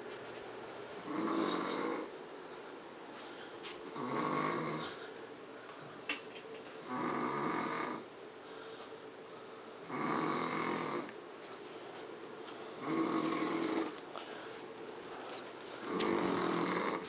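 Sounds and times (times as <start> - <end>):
man snoring: 1.0 - 2.1, 3.9 - 5.0, 6.8 - 8.1, 9.8 - 11.1, 12.8 - 14.0, 15.8 - 17.0.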